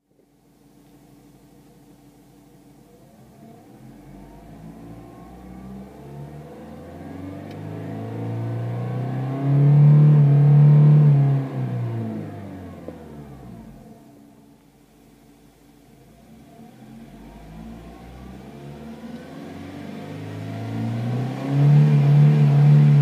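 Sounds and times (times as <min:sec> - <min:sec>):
car engine accelerating past: 0:03.5 - 0:13.8, 0:16.4 - 0:23.0.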